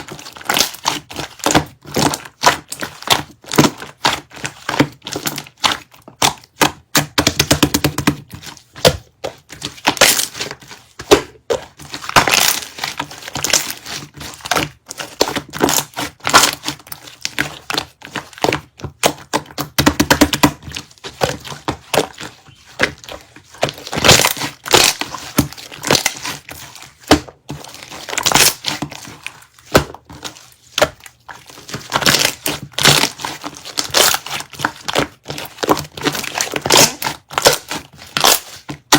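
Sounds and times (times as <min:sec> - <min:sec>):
slime squishing and popping: 0:00.0 - 0:38.9.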